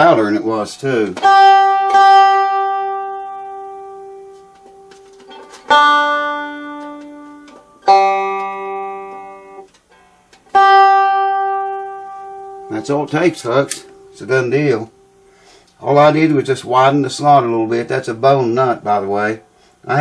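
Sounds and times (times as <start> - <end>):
guitar strings picked: 0.0 - 20.0.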